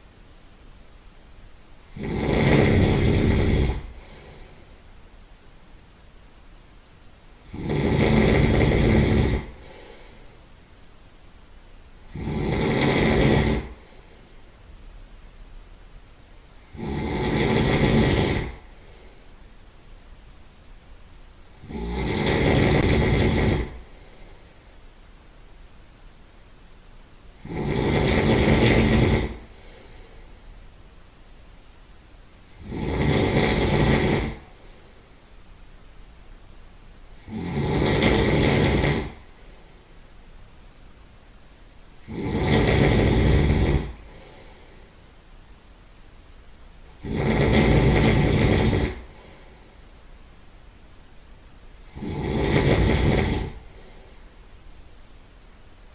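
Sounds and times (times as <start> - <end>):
quiet breathing: 0.0 - 5.9, 6.8 - 15.4, 16.3 - 25.8, 26.4 - 55.9
man snoring loudly: 1.9 - 4.6, 7.4 - 10.3, 12.1 - 14.2, 16.6 - 19.1, 21.5 - 24.4, 27.4 - 30.2, 32.4 - 34.7, 37.2 - 39.3, 42.0 - 44.8, 46.9 - 49.6, 51.8 - 54.1.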